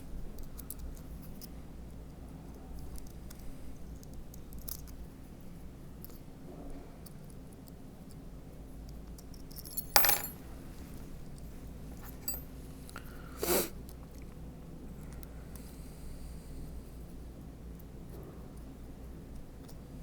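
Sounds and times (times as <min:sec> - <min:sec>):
small metal parts clinking: 0:09.2 - 0:10.6, 0:12.0 - 0:12.5.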